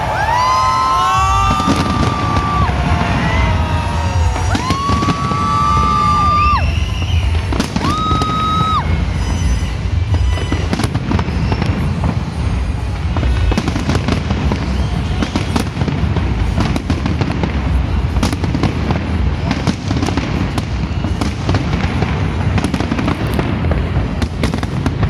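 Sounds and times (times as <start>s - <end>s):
fireworks bursting and crackling: 0.0s - 25.0s
music playing: 0.0s - 25.0s.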